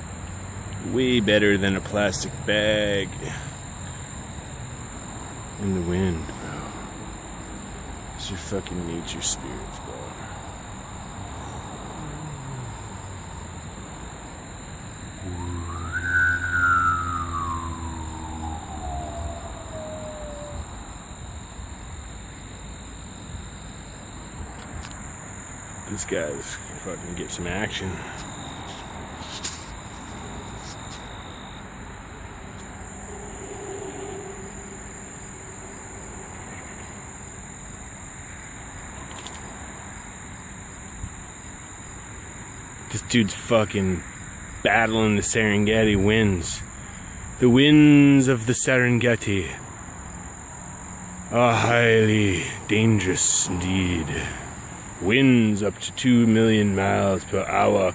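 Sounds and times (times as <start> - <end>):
high-pitched insect drone: 0.0 - 41.9, 43.9 - 57.9
steady low hum: 0.6 - 22.2
siren wailing: 15.2 - 21.4, 32.9 - 35.6.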